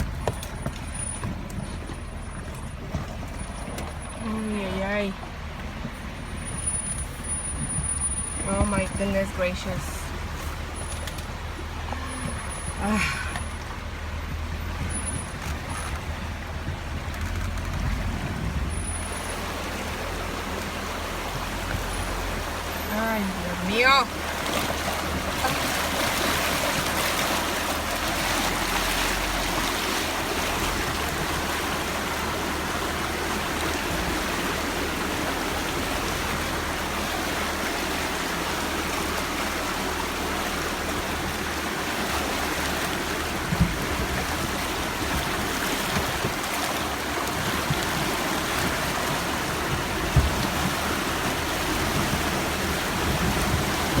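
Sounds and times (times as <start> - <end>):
low engine hum: 0.0 - 54.0
river water rushing: 0.0 - 54.0.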